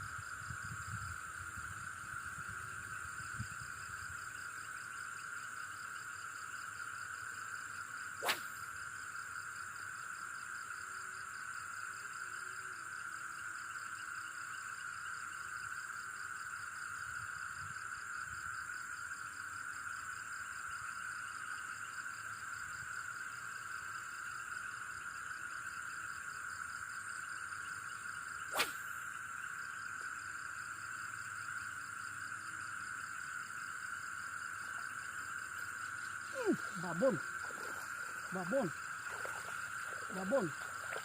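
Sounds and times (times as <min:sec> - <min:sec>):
crickets and night insects chirping: 0:00.0 - 0:41.0
fishing rod swishing through air: 0:08.2 - 0:08.6, 0:28.5 - 0:29.0.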